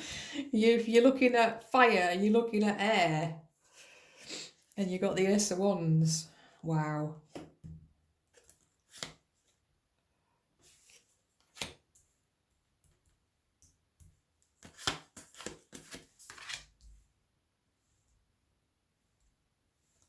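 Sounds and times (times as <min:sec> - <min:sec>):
cards swishing and tapping: 0:07.3 - 0:09.3, 0:10.6 - 0:12.0, 0:14.0 - 0:16.9.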